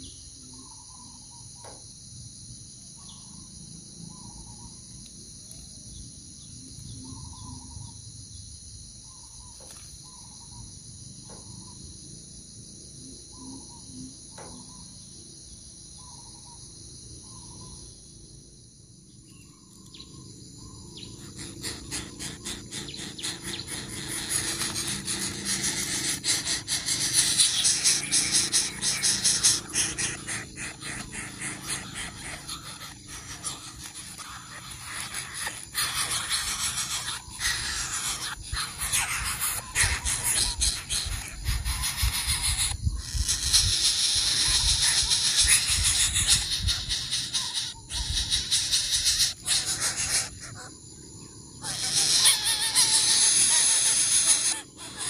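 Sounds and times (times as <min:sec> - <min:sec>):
high-pitched insect drone: 0:00.0 - 0:55.0
insect chirps: 0:00.0 - 0:55.0
rapid rattling buzz: 0:20.9 - 0:50.5.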